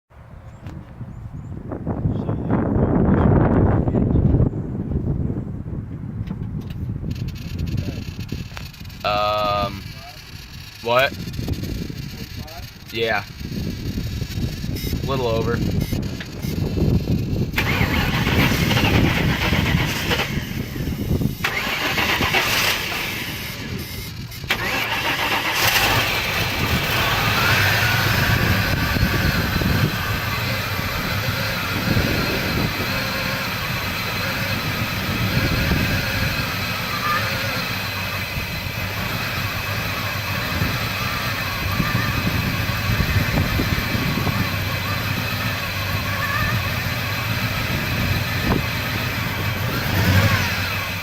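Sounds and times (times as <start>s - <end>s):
car starter cranking: 7.0s - 51.0s.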